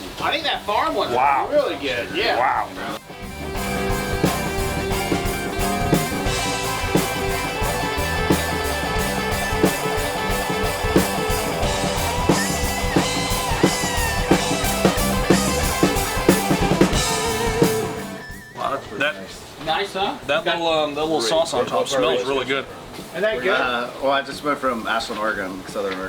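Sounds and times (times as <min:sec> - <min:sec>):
bass and electric guitar: 0:00.0 - 0:18.7
lead guitar bending: 0:00.0 - 0:19.6
drum kit beat: 0:00.0 - 0:26.0.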